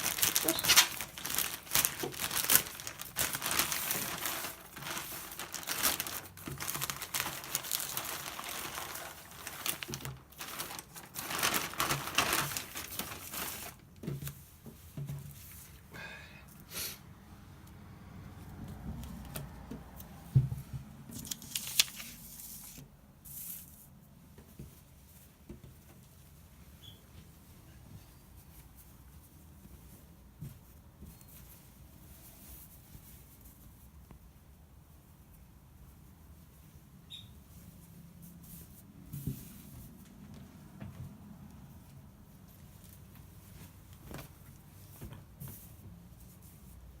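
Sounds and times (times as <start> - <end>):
packaging tearing and rustling: 0.0 - 13.9, 21.1 - 22.8.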